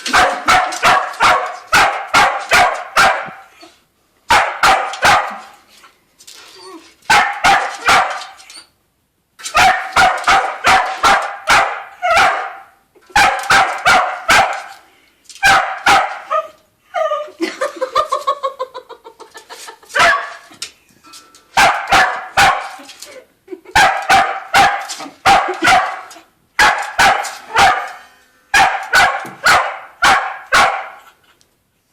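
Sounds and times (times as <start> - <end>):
dog barking: 0.1 - 3.5, 4.3 - 5.5, 7.1 - 8.4, 9.5 - 14.8, 15.4 - 16.5, 20.0 - 20.5, 21.6 - 22.8, 23.8 - 31.0.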